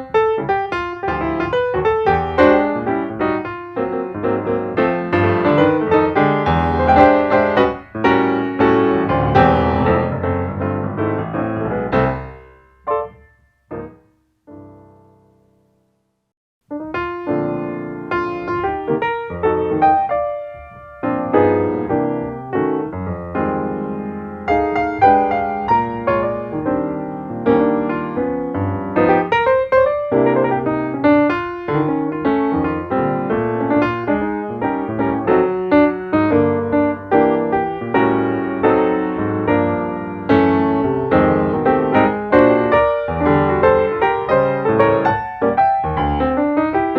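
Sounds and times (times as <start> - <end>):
jazz piano music: 0.0 - 16.0, 16.6 - 46.9.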